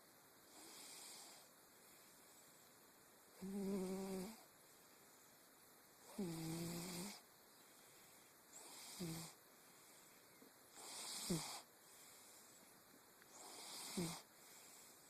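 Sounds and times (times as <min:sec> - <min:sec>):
cat snoring: 0:00.5 - 0:01.5, 0:03.4 - 0:04.4, 0:06.0 - 0:07.2, 0:08.5 - 0:09.4, 0:10.7 - 0:12.4, 0:13.3 - 0:14.9.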